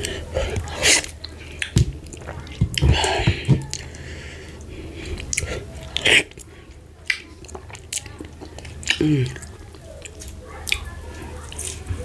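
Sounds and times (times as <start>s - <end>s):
chewing and wet mouth smacks: 5.1s - 10.9s.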